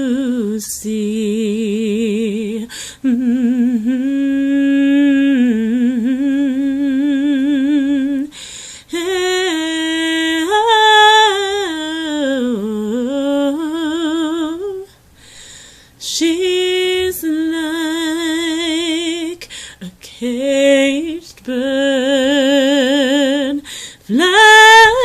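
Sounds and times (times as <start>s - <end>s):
woman singing a cappella: 0.0s - 25.0s
woman taking a breath: 2.7s - 3.0s, 8.3s - 8.9s, 15.1s - 16.0s, 19.5s - 19.8s, 23.6s - 24.0s.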